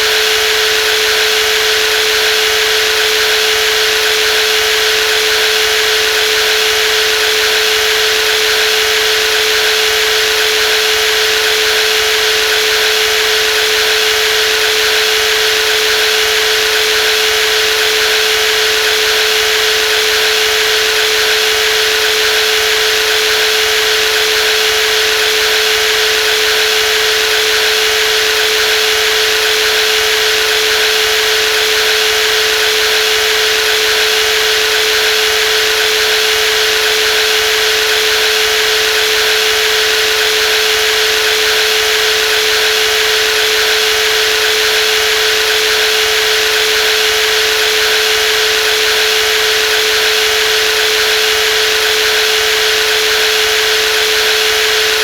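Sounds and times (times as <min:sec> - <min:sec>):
jigsaw whining: 0:00.0 - 0:55.0.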